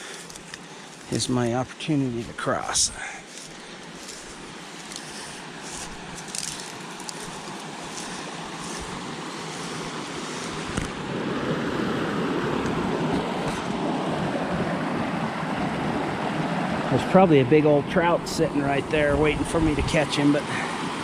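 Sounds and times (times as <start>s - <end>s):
mountain creek rushing: 0.0s - 21.0s.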